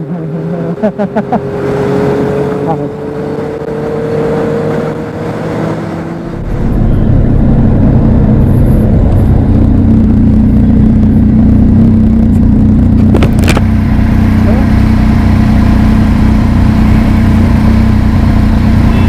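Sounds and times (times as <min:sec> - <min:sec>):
motorcycle engine droning: 0:00.0 - 0:19.0.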